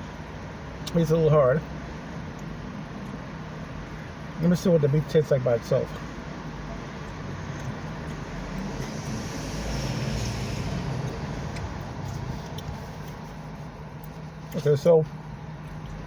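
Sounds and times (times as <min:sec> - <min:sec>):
passing vehicle: 0:00.0 - 0:16.0
steady low traffic hum: 0:00.0 - 0:16.0.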